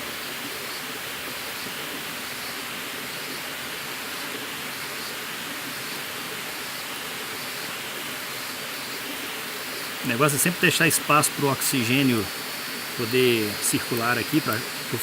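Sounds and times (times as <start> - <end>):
running water rushing: 0.0 - 15.0.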